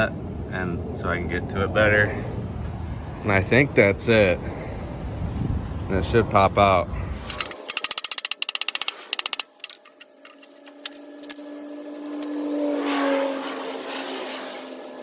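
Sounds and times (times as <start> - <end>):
fast ratchet clicking: 7.3 - 11.0
steady drone: 8.9 - 15.0.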